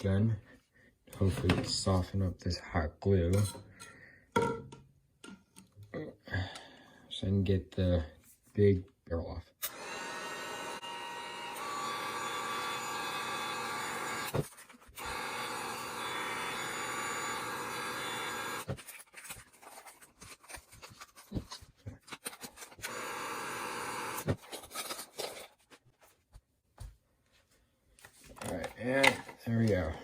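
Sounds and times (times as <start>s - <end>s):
heat gun blowing hot air: 15.0s - 18.7s
plastic parts knocking and rubbing: 18.7s - 22.8s.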